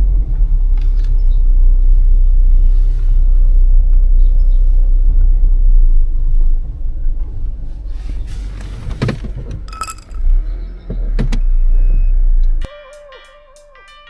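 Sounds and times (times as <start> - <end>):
car road noise rumble: 0.0 - 12.7
brief high tone: 12.7 - 14.0.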